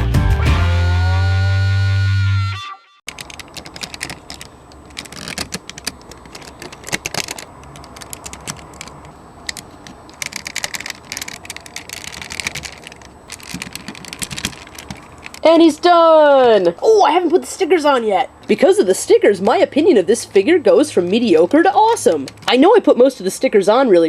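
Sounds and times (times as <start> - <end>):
plastic parts clicking and rattling: 3.1 - 15.5.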